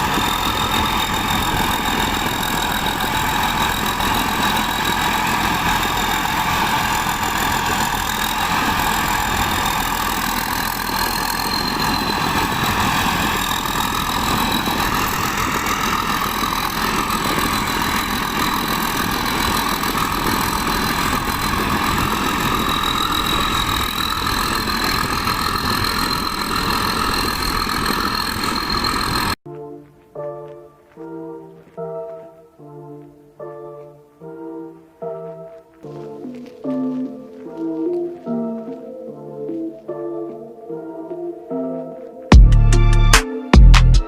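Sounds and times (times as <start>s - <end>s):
heavy machinery engine running: 0.0s - 29.4s
high-pitched whine: 0.0s - 29.4s.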